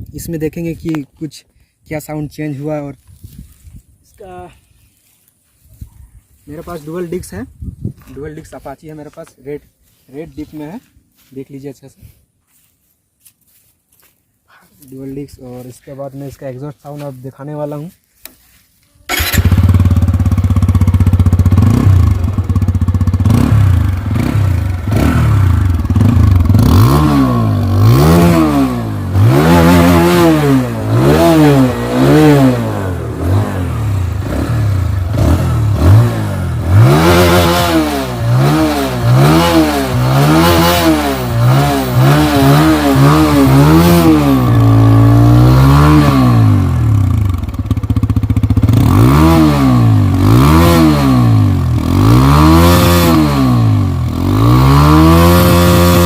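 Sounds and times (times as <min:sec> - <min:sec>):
motorcycle engine idling: 0:19.1 - 0:26.7, 0:46.3 - 0:50.2
motorcycle engine revving: 0:19.1 - 0:56.0.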